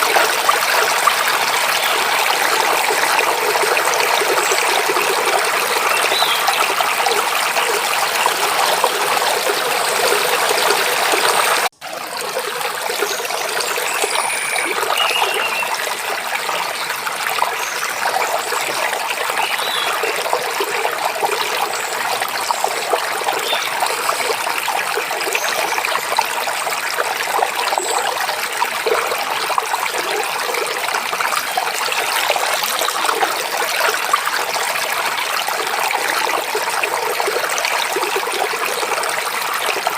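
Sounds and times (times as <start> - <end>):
stream babbling over rocks: 0.0 - 39.9
faint bird chirps: 13.8 - 15.8.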